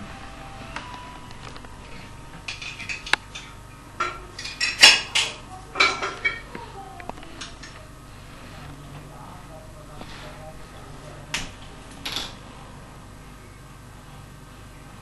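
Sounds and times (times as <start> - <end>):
utensils clinking against metal pot: 2.4 - 6.6.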